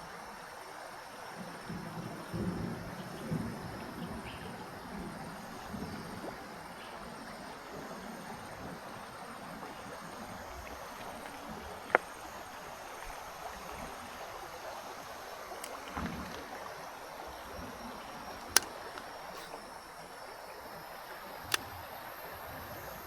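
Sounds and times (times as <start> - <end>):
sharp short clicks: 17.9 - 19.6, 21.4 - 21.9.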